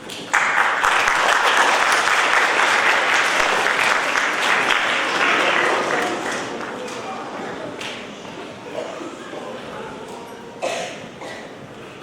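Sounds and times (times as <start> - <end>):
audience applauding: 0.0 - 8.0.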